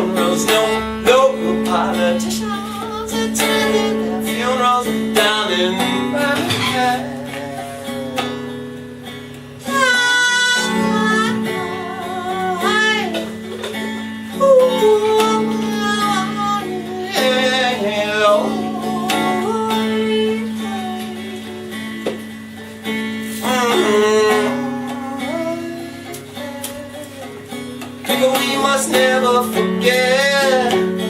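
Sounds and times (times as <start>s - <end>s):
acoustic guitar blues accompaniment: 0.0s - 31.0s
wavering lead melody bending: 0.0s - 31.0s.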